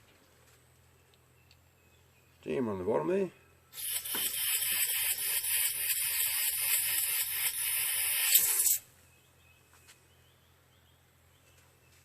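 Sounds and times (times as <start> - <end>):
gas hissing from nozzle: 3.8 - 8.8.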